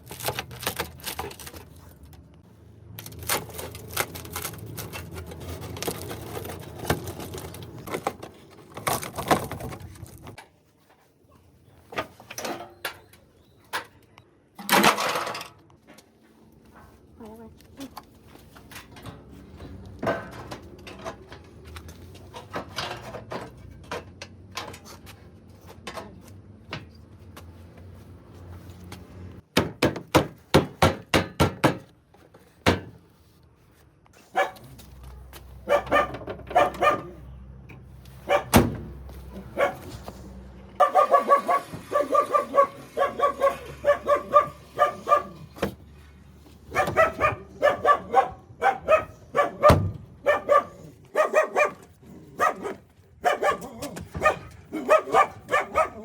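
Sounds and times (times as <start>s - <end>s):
dog barking: 34.3s - 34.6s, 35.6s - 37.2s, 38.3s - 38.6s, 39.5s - 39.9s, 40.8s - 45.5s, 46.7s - 56.0s.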